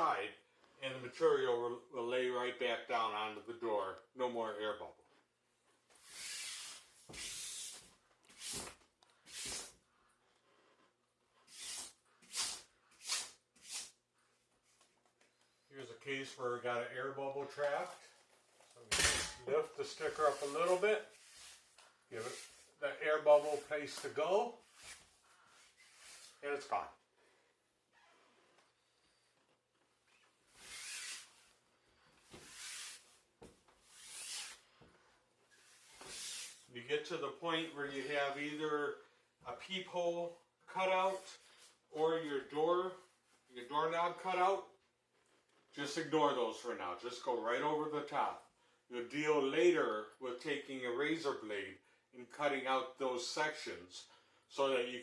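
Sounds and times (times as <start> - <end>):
hand rubbing fabric sticker: 20.0 - 23.7, 32.3 - 33.2, 33.8 - 34.6.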